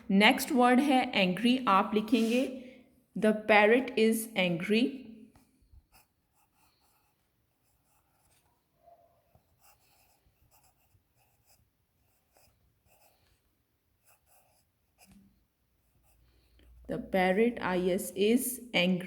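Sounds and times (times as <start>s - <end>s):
pen writing strokes: 2.0s - 2.5s, 5.3s - 8.6s, 9.3s - 16.9s.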